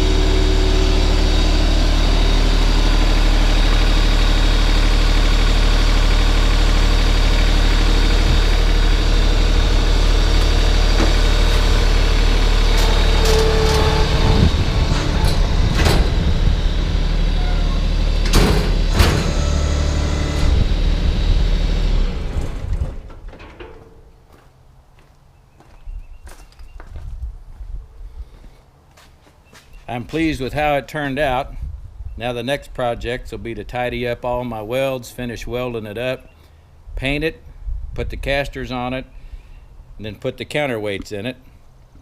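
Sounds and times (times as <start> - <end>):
tractor diesel engine running: 0.0 - 24.2
metallic clanks and knocks: 10.4 - 19.5, 22.5 - 24.2.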